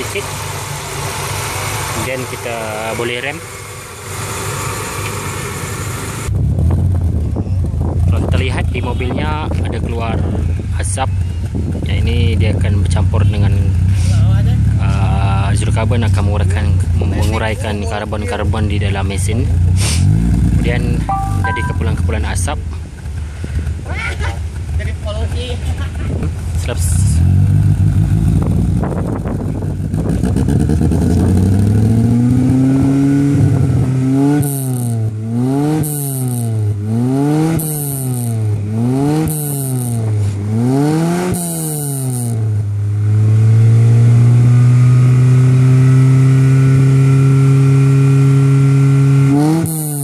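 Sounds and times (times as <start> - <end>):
car engine revving: 0.0 - 9.0, 18.4 - 21.1, 24.5 - 50.0.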